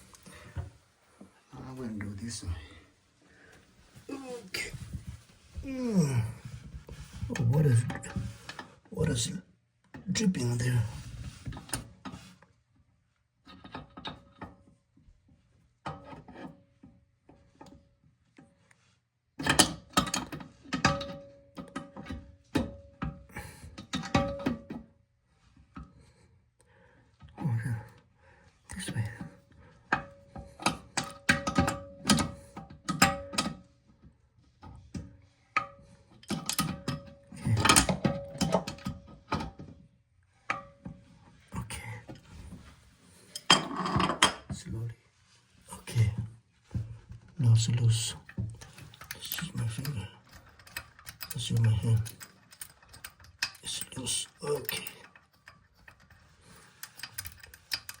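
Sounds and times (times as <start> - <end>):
tool scraping and clicking on bolt: 34.6 - 39.8, 48.5 - 58.0.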